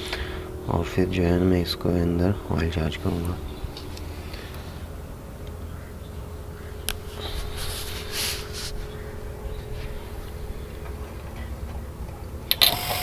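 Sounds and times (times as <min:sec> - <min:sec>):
low steady hum: 0:00.0 - 0:13.0
rustling: 0:06.9 - 0:11.6.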